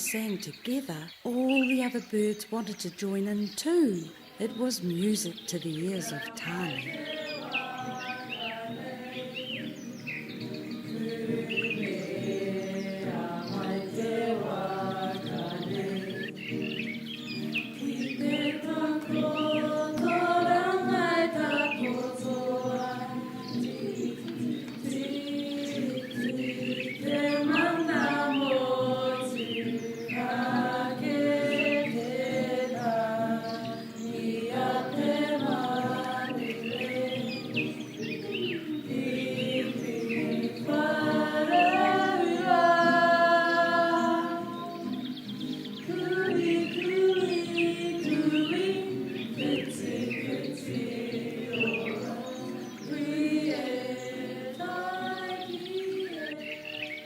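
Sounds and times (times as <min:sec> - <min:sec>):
bird calls and whistles: 0:00.0 - 0:33.0, 0:44.0 - 0:50.8
high sliding sung line: 0:03.6 - 0:56.6
group singing in harmony: 0:04.0 - 0:57.0
choir chanting over low chords: 0:06.1 - 0:45.0, 0:45.9 - 0:57.0.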